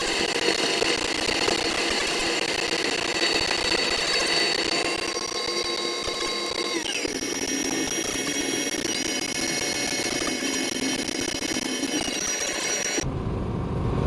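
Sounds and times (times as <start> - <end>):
high whining tones: 0.0 - 13.0.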